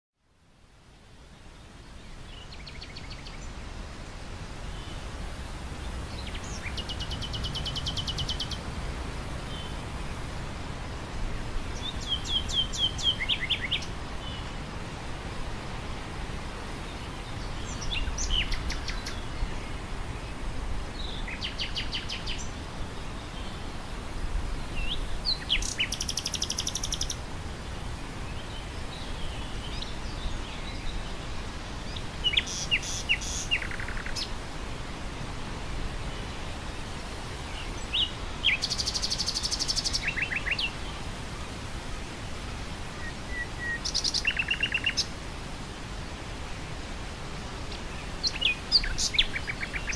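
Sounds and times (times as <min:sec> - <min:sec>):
wind blowing through grass: 0:00.2 - 0:49.9
nightingale singing: 0:06.1 - 0:08.6, 0:11.8 - 0:14.4, 0:17.4 - 0:19.3, 0:24.8 - 0:27.2, 0:31.9 - 0:34.3, 0:37.8 - 0:40.8, 0:43.0 - 0:45.1, 0:48.2 - 0:49.9.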